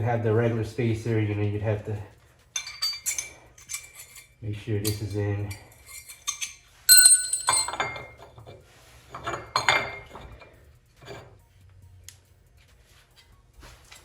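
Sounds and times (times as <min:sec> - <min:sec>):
metal parts clinking: 0:02.5 - 0:08.5, 0:09.1 - 0:11.3.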